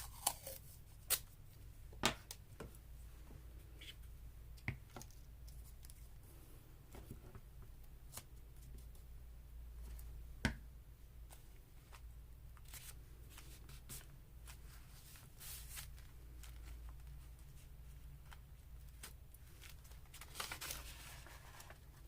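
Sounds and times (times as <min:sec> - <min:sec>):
paper rustling: 0:12.7 - 0:22.0.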